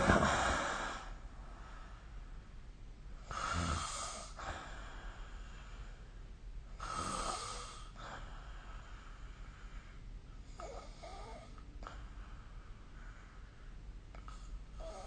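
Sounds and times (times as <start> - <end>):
person snoring: 3.3 - 4.4
soft breath: 3.3 - 15.0.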